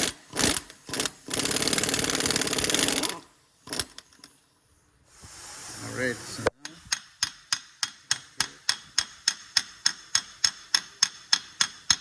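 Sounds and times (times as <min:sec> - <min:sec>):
hammer tapping metal: 0:06.9 - 0:12.0.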